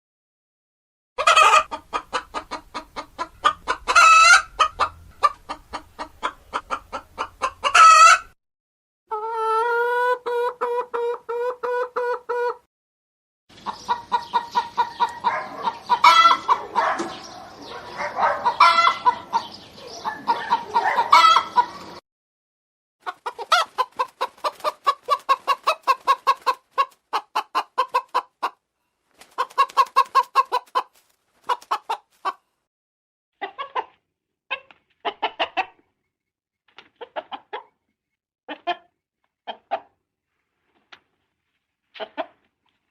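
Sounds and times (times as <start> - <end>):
hens clucking: 1.2 - 8.4, 9.1 - 12.6, 13.5 - 22.0, 23.0 - 28.6, 29.2 - 32.4, 33.4 - 35.9, 37.0 - 37.8, 38.5 - 40.0, 42.0 - 42.5.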